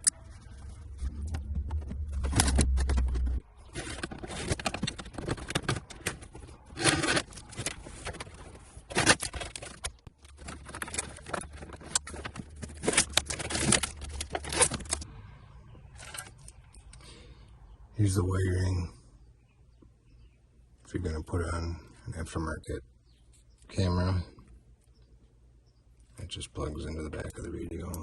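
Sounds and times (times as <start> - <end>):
wires rustling: 0.0 - 15.1
plastic parts scraping: 0.9 - 15.1, 15.9 - 16.6.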